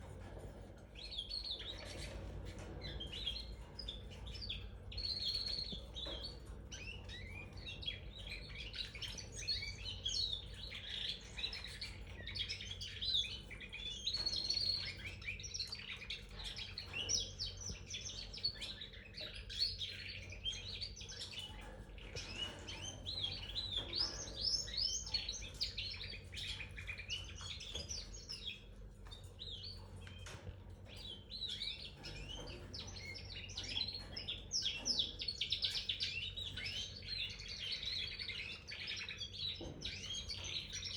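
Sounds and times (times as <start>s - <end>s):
canary singing: 0.0s - 40.9s.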